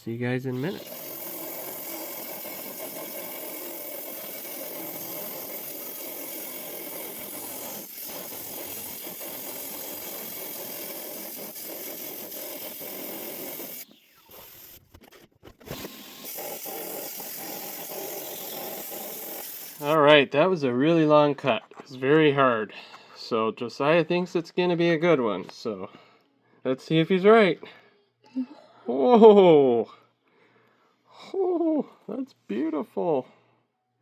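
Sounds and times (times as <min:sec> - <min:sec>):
rock saw grinding through stone: 0:00.6 - 0:14.8, 0:15.6 - 0:20.0.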